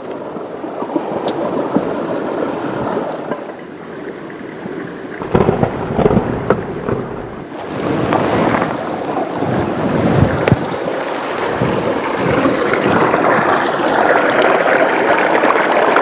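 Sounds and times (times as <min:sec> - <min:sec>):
river water rushing: 0:00.2 - 0:16.0
heavy rain: 0:04.9 - 0:16.0
deep rumble: 0:05.2 - 0:07.6.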